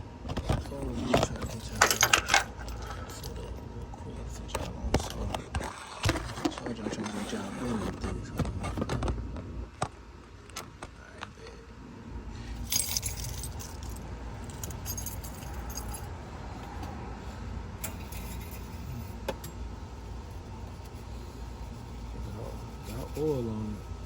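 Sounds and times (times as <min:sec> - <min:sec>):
low steady rumble: 0:00.0 - 0:24.0
light metallic jingling: 0:12.6 - 0:16.2, 0:17.8 - 0:19.6
handling clicks and knocks: 0:19.2 - 0:19.6.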